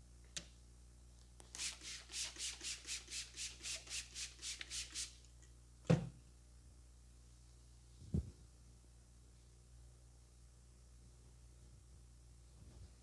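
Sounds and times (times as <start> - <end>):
hands rubbing head: 1.5 - 5.1.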